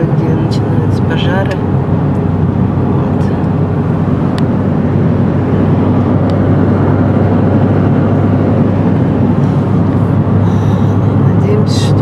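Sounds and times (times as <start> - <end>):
car road and engine rumble: 0.0 - 12.0.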